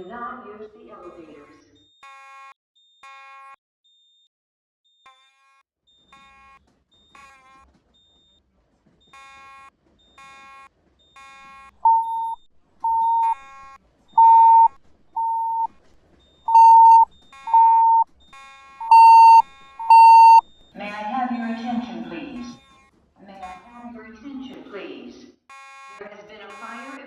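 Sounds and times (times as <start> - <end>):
loud pure alarm beeps: 11.9 - 13.4, 14.2 - 15.7, 16.5 - 18.0, 18.8 - 20.4
soft buzzy alarm beep: 11.9 - 13.4, 14.2 - 15.7, 16.5 - 18.0, 18.8 - 20.4.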